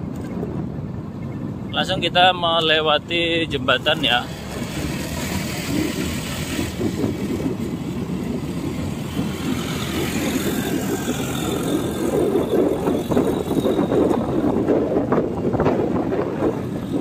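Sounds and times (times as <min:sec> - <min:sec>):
road noise: 0:00.0 - 0:17.0
vehicle engine running: 0:03.4 - 0:17.0.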